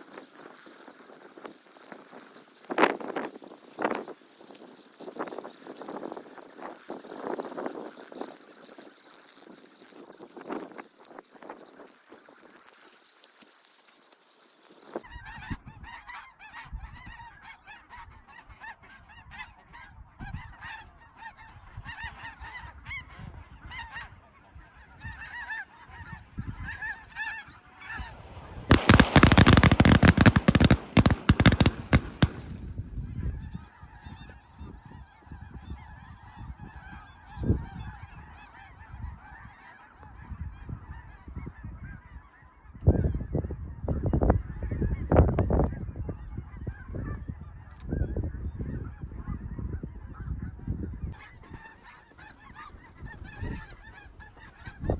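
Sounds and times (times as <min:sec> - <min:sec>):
geese honking and calling: 0:00.0 - 0:32.4, 0:51.2 - 0:54.9.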